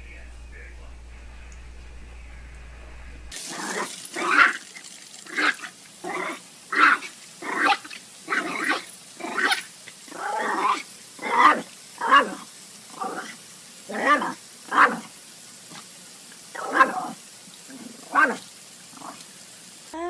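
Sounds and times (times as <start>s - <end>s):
low hum: 0.0s - 3.4s.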